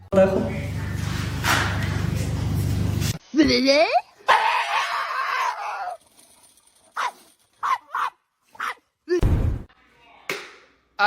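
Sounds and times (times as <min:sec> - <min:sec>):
dog yipping: 0:07.0 - 0:08.8.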